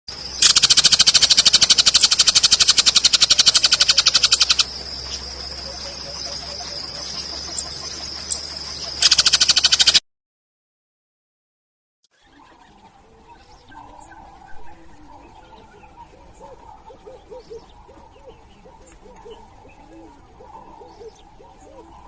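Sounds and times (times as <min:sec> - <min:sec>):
animal pulsed trill: 0:00.1 - 0:10.0
high-pitched whine: 0:00.1 - 0:10.0.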